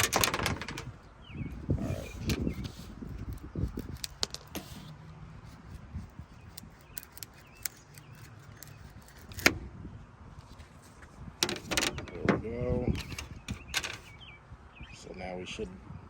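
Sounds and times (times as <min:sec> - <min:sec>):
plastic trim clicks and rattles: 0:13.0 - 0:14.1.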